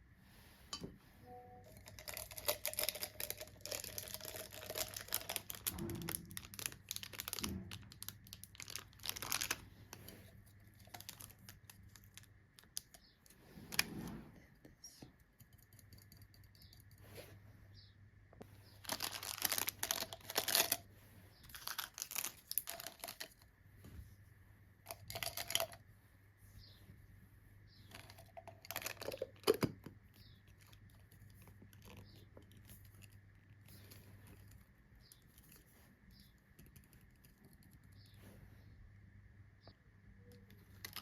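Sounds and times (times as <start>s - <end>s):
packaging tearing and crinkling: 1.9s - 9.6s, 18.8s - 20.8s, 21.5s - 23.3s.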